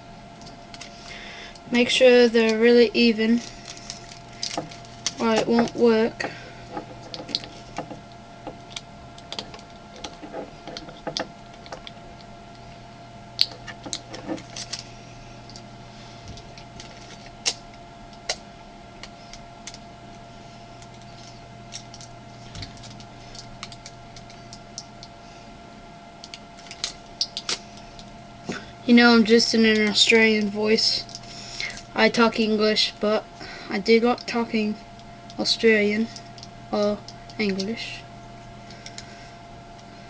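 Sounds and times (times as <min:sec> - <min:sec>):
steady low hum: 0:00.0 - 0:40.0
tape and batteries clicking: 0:03.4 - 0:12.6, 0:13.4 - 0:15.7, 0:16.3 - 0:20.2, 0:20.8 - 0:25.2, 0:26.2 - 0:28.2.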